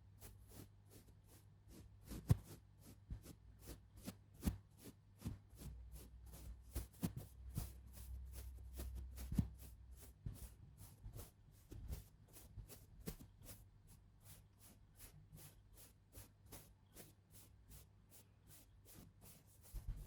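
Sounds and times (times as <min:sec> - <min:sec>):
soft taps and brushing strokes: 0:00.0 - 0:20.0.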